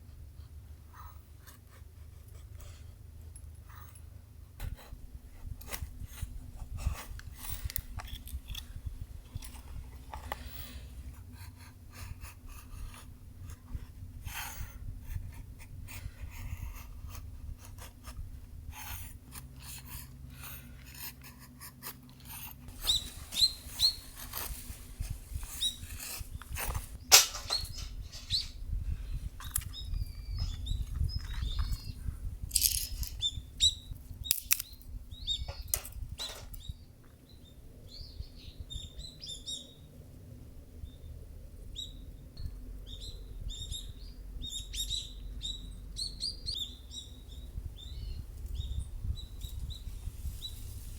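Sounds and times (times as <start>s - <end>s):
high bird chirps: 22.8s - 24.1s, 27.1s - 28.6s.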